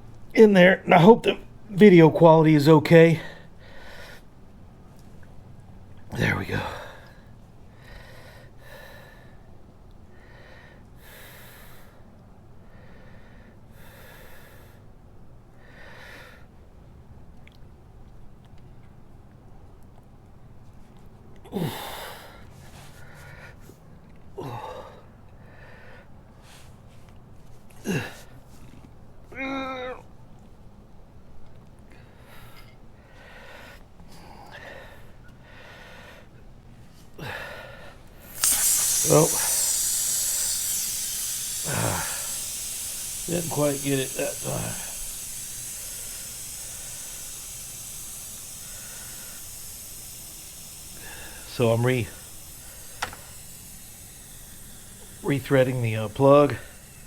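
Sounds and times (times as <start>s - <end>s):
man breathing hard: 3.2s - 4.4s, 6.5s - 9.5s, 10.1s - 15.0s, 15.6s - 16.6s, 21.5s - 23.7s, 31.9s - 57.0s.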